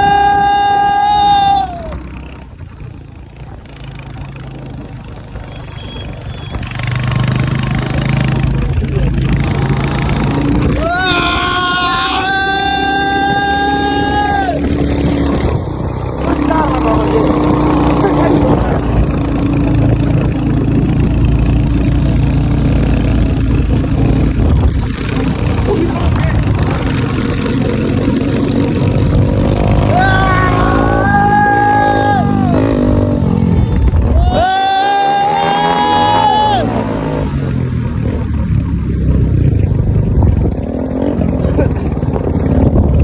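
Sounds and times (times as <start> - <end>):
motorcycle engine running: 0.0 - 43.0.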